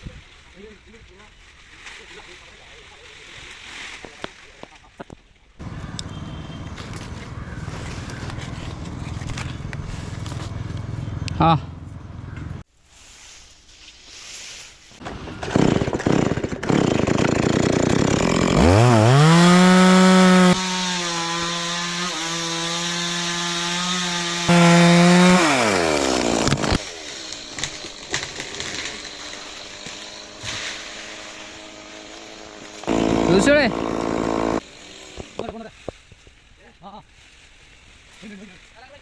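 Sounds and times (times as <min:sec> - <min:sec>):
chainsaw revving: 0:15.0 - 0:35.5
chainsaw cutting wood: 0:15.0 - 0:35.6.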